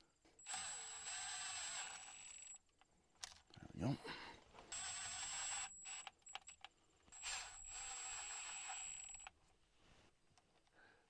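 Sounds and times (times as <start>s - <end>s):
power ratchet whining: 0.4s - 2.6s, 4.7s - 9.3s.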